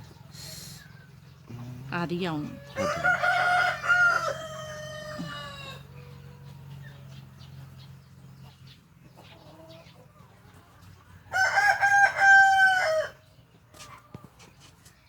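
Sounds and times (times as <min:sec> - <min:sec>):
rooster crowing: 0:02.4 - 0:06.6, 0:11.3 - 0:13.3.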